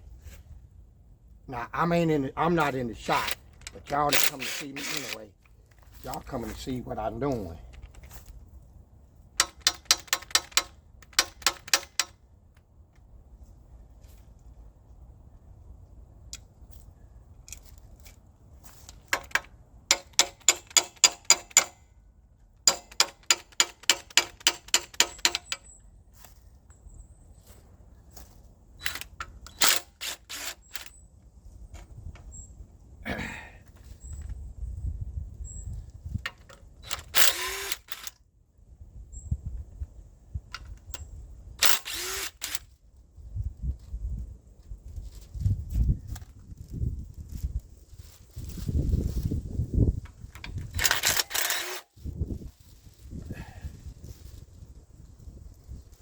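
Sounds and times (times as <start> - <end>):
ratchet wrench clicking: 3.2 - 5.2, 9.4 - 12.2, 19.2 - 21.8, 22.7 - 25.6, 28.9 - 30.9, 36.3 - 38.2, 41.6 - 42.6, 50.4 - 51.9
power tool motor winding down: 4.1 - 5.2, 29.6 - 30.9, 36.9 - 38.1, 41.6 - 42.6, 50.8 - 51.8.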